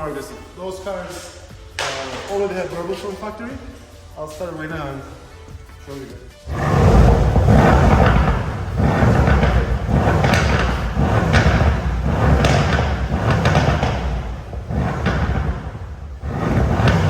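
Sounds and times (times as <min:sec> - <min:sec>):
exhaust cracks: 0:00.0 - 0:03.6, 0:04.3 - 0:17.0
car engine exhaust rumble: 0:06.4 - 0:17.0.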